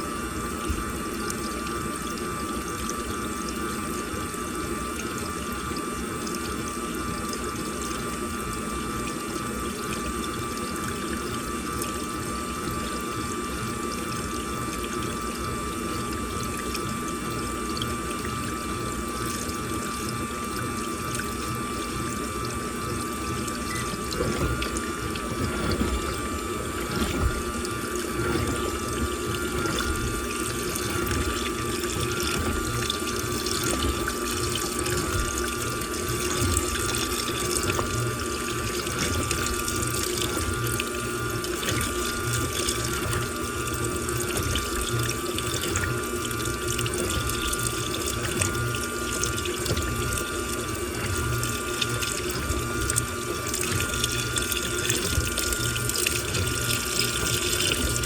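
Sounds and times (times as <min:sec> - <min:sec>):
washing machine hum: 0:00.0 - 0:58.0
water rushing into drum: 0:00.0 - 0:58.0.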